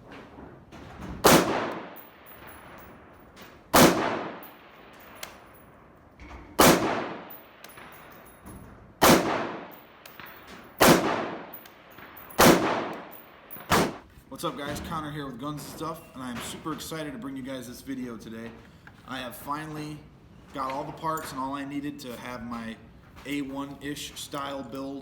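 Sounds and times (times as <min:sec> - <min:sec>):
rifle shots: 0:01.2 - 0:05.6, 0:06.5 - 0:08.3, 0:09.0 - 0:14.1.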